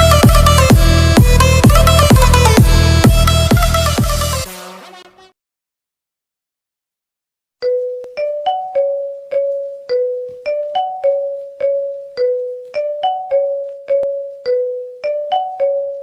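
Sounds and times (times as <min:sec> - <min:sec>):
bell-like electronic ringtone: 0:07.6 - 0:16.0.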